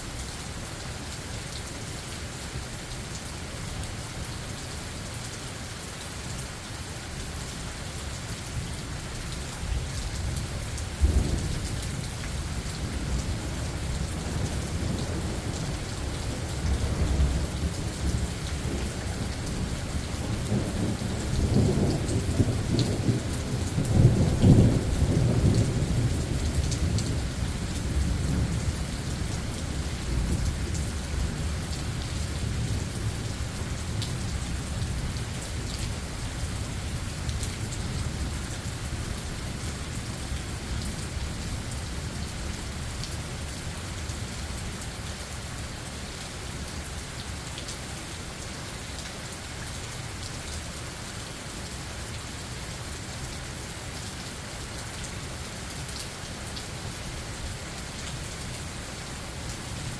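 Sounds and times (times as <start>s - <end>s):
rain hissing on forest floor: 0.0s - 59.9s
low rolling thunder: 11.0s - 12.0s, 12.8s - 35.3s.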